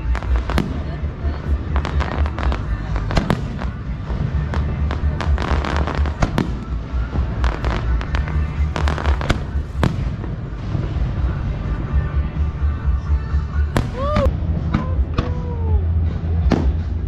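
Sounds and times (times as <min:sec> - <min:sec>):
continuous low rumble: 0:00.0 - 0:17.0
fireworks bangs and crackles: 0:00.0 - 0:17.0.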